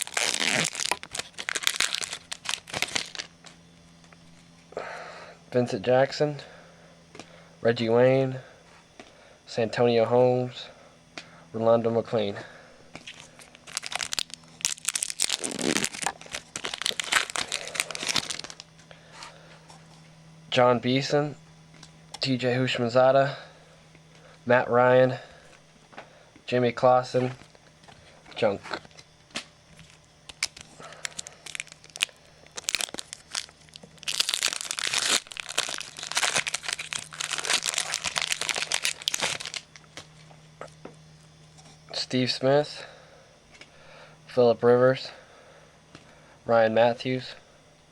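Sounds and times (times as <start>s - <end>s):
wrapper tearing: 0.0s - 3.3s, 13.0s - 18.7s, 30.3s - 40.1s
wrapper crinkling: 0.0s - 3.5s, 13.0s - 18.7s, 29.8s - 40.2s.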